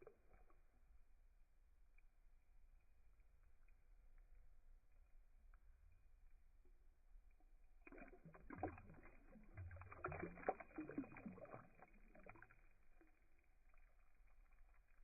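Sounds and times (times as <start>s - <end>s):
water splashing and sloshing: 7.3s - 15.0s.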